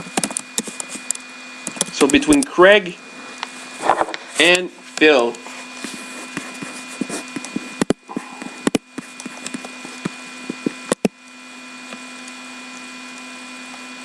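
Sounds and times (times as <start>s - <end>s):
sharp clicks and taps: 0.0s - 2.5s, 7.3s - 11.2s
steady whir: 0.0s - 14.0s.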